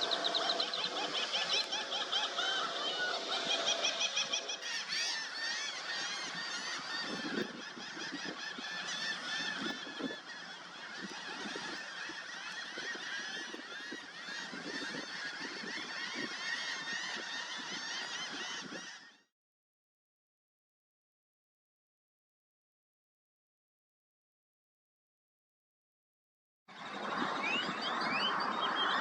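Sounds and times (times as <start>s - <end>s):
flock of waterfowl calling: 0.0s - 19.3s, 27.1s - 29.0s.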